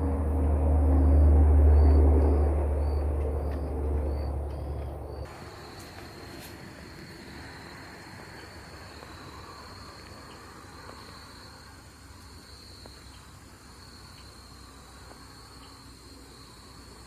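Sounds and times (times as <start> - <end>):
low background rumble: 0.0 - 5.3
insects chirring: 0.0 - 17.0.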